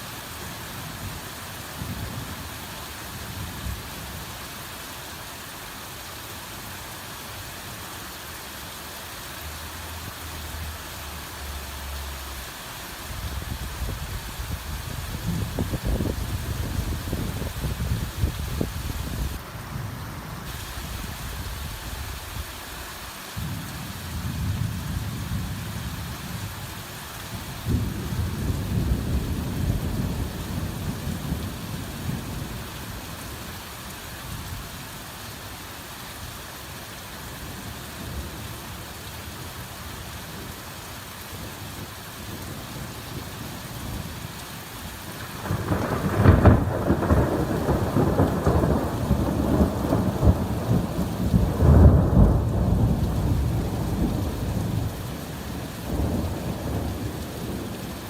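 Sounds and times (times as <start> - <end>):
heavy rain falling: 0.0 - 58.0
thunder rumbling: 13.2 - 19.4, 27.7 - 32.6, 45.2 - 57.7.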